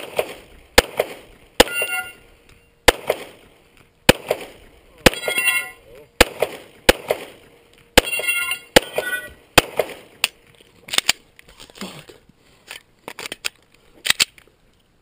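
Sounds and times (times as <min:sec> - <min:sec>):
pistol shots: 0:00.0 - 0:02.2, 0:02.8 - 0:03.5, 0:04.1 - 0:07.4, 0:08.0 - 0:10.3
metallic ringing: 0:01.6 - 0:02.7, 0:05.1 - 0:05.9, 0:08.0 - 0:09.4.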